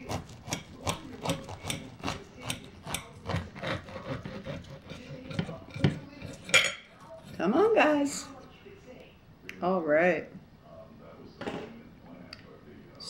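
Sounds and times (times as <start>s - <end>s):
knife sawing through sandwich: 0.0s - 8.2s.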